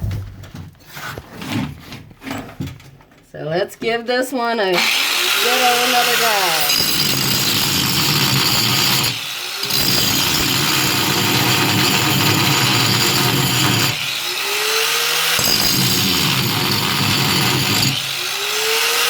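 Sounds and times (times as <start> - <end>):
angle grinder grinding metal: 4.7 - 19.0.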